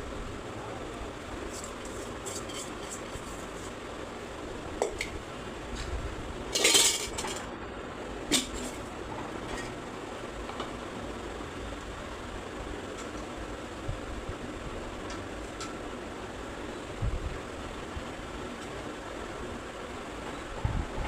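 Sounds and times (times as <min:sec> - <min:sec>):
utensils clinking against pots: 0:01.5 - 0:03.2, 0:06.5 - 0:07.5.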